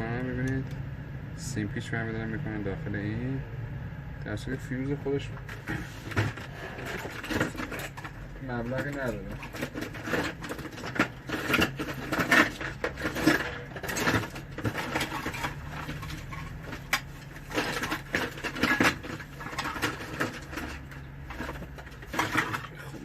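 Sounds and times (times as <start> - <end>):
tools clattering on workbench: 5.4 - 23.0.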